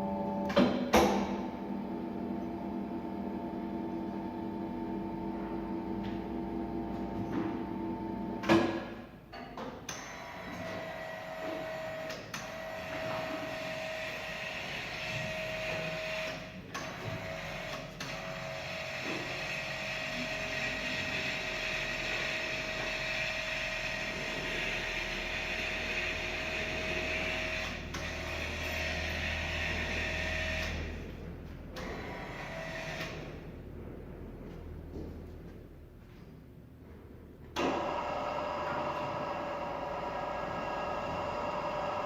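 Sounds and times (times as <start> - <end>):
drilling machine whine: 17.0 - 31.0, 37.6 - 42.0.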